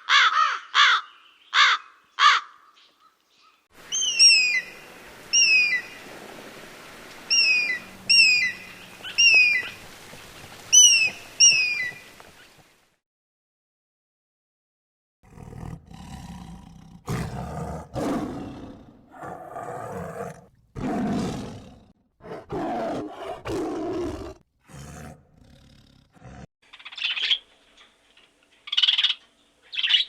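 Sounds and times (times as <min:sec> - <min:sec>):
bird chirping: 0:01.0 - 0:06.1, 0:07.3 - 0:12.1, 0:26.7 - 0:30.0
big cat roaring: 0:15.2 - 0:26.5.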